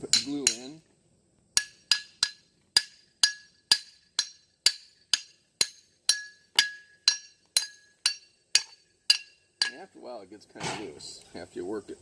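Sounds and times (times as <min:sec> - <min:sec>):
hammer ringing on steel axe head: 0:00.0 - 0:00.8, 0:01.6 - 0:09.8.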